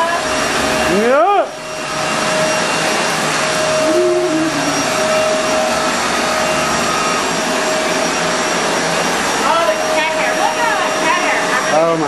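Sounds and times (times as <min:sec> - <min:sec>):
upright vacuum cleaner running: 0:00.0 - 0:12.0.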